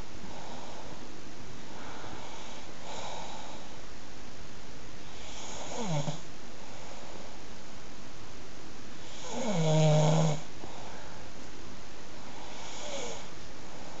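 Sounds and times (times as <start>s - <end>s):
steady hiss: 0.0s - 14.0s
person snoring: 5.1s - 6.2s, 9.0s - 10.8s, 12.4s - 13.3s.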